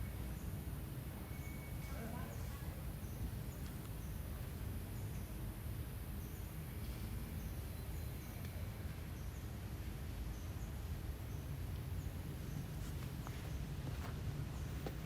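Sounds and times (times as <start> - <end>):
faint high chirps: 0.0 - 5.4.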